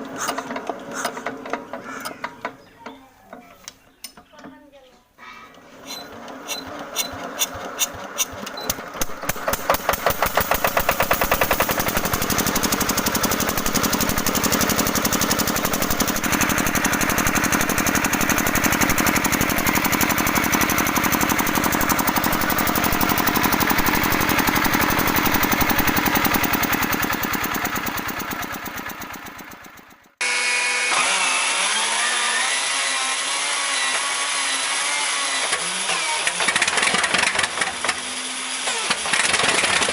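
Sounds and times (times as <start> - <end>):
old engine starting and running: 0.0 - 2.6, 5.5 - 39.9
second engine running: 6.1 - 30.4.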